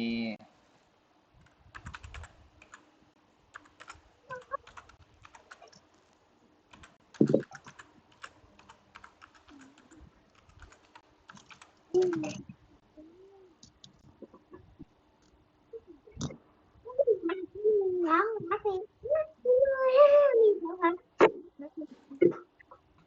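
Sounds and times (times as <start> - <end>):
keyboard typing: 1.4 - 2.9, 3.5 - 5.9, 6.7 - 12.5.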